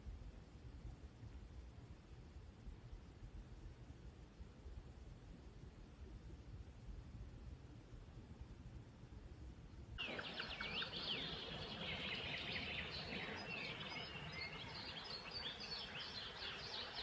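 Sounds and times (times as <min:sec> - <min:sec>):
songbirds singing: 0:10.0 - 0:17.0.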